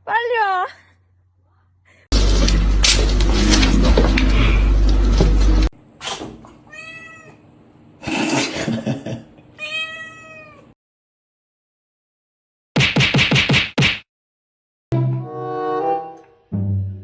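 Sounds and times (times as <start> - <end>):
cat meowing: 6.7 - 7.4, 9.6 - 10.7.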